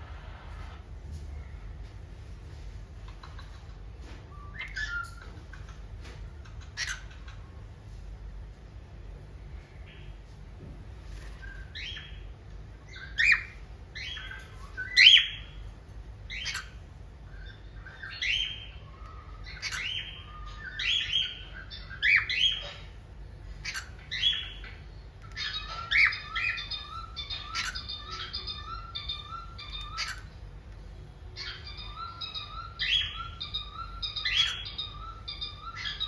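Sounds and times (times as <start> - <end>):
cockatiel chirps and squawks: 4.3 - 5.8, 6.4 - 7.4, 12.9 - 15.6, 16.3 - 22.9, 23.6 - 30.4, 31.3 - 36.0.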